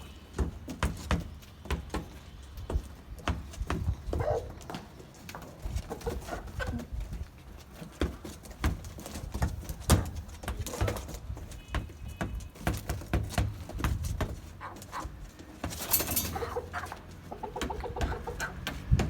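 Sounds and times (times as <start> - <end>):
chickens clucking: 3.8 - 7.9, 14.5 - 19.0.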